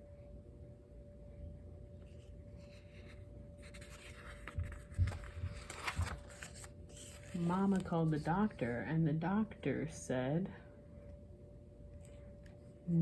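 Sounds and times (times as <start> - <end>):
faint steady hum: 0.0 - 13.0
paper rustling: 2.1 - 8.8.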